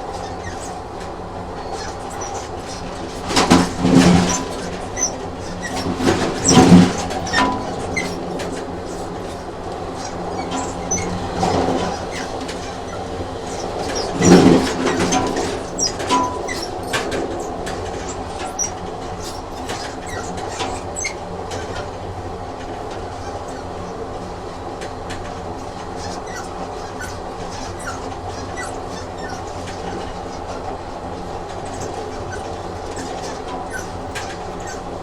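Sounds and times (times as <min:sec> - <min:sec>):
high squeaks: 0:00.0 - 0:00.9, 0:01.5 - 0:22.0, 0:22.7 - 0:24.3, 0:25.2 - 0:35.0
train rumbling along track: 0:00.0 - 0:35.0.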